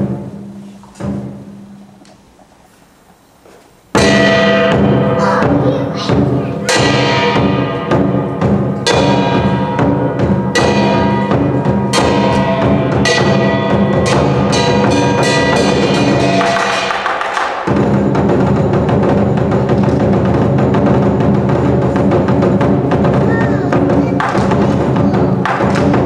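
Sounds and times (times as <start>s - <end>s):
big drum beating: 0.0s - 26.0s
cymbals clashing: 0.0s - 26.0s
gong ringing: 4.0s - 22.9s.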